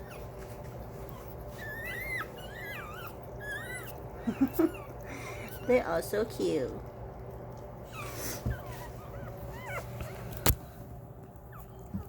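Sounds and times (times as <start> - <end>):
puppies squeaking: 0.0 - 6.2, 7.8 - 10.4.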